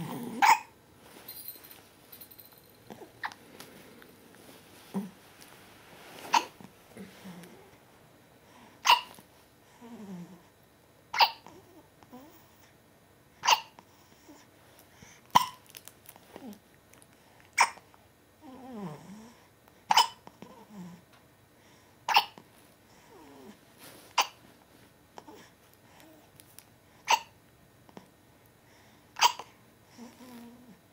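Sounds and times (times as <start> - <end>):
sharp hiccups: 0.4 - 0.7, 6.3 - 6.6, 8.8 - 9.2, 11.2 - 11.5, 13.4 - 13.8, 15.4 - 15.6, 17.6 - 17.8, 19.9 - 20.2, 22.1 - 22.4, 24.2 - 24.4, 27.1 - 27.3, 29.2 - 29.5.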